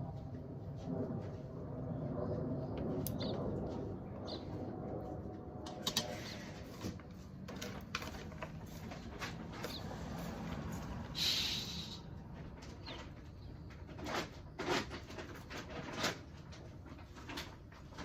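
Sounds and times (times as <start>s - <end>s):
short hiss: 11.2s - 12.0s.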